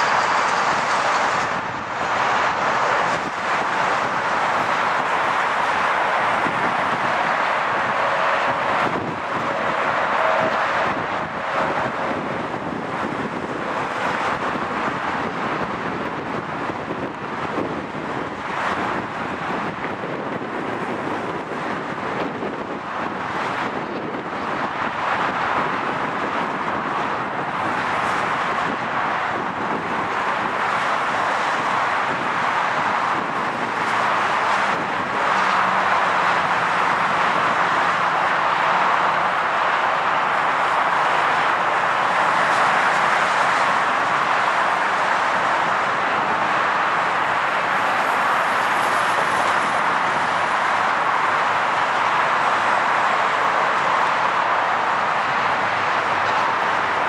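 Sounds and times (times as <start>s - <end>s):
jet engine rushing: 0.0s - 21.6s
wind buffeting microphone: 0.0s - 57.0s.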